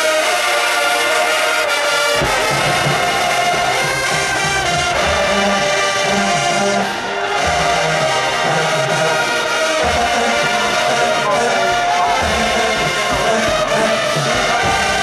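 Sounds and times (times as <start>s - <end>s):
brass notes: 0.0s - 15.0s
steady drum beat: 2.0s - 15.0s.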